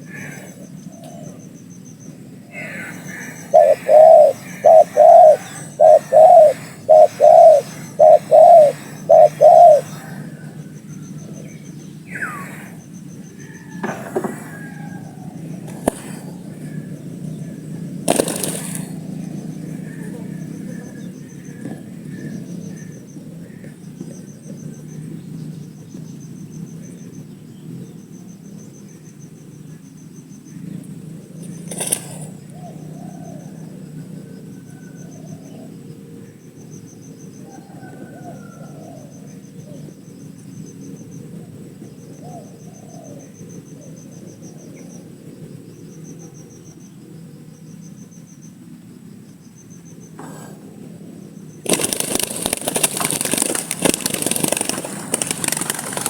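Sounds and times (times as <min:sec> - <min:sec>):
dove cooing: 0:00.0 - 0:11.4, 0:13.5 - 0:24.7, 0:37.5 - 0:40.0, 0:41.3 - 0:44.0, 0:50.2 - 0:56.0
insect chirping: 0:00.0 - 0:13.8, 0:42.6 - 0:56.0.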